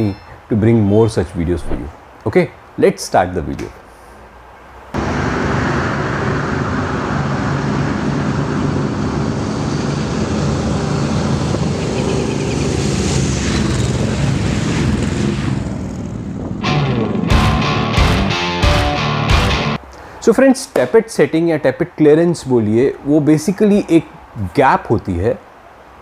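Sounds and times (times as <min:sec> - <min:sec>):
wind rush: 0:01.5 - 0:02.0.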